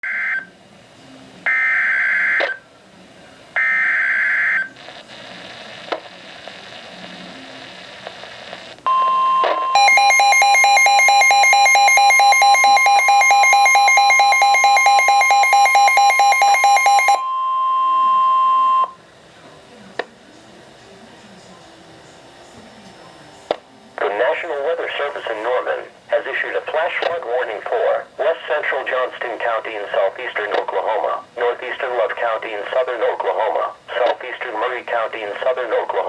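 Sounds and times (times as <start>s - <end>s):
rapid pulsing alarm: 8.9s - 18.9s
steady attention tone: 8.9s - 19.1s.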